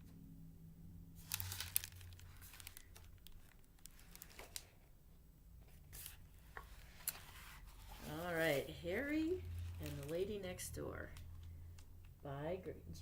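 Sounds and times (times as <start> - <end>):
low room hum: 0.0 - 13.0
book pages rustling: 1.2 - 4.8, 5.7 - 10.4.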